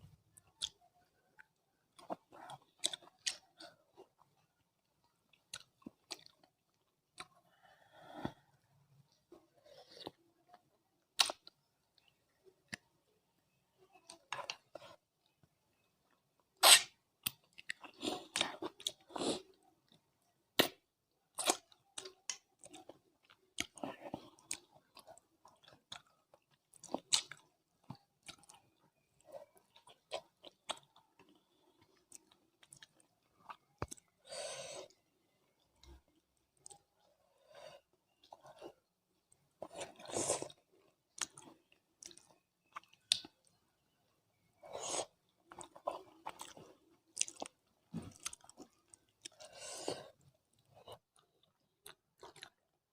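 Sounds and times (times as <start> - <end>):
person chewing food: 0.3 - 12.9, 14.0 - 52.7
food crunching: 20.6 - 34.2, 38.1 - 43.6, 44.4 - 52.7.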